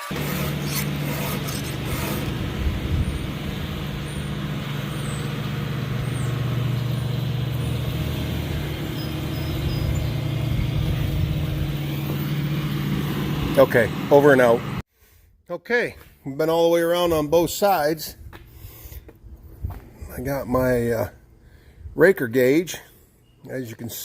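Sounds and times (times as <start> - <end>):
motor humming steadily: 0.0 - 14.8.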